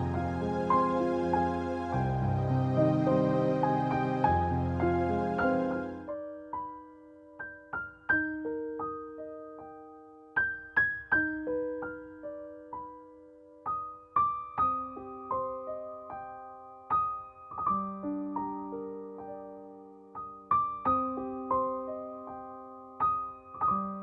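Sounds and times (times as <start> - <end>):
gentle piano melody: 0.0 - 24.0.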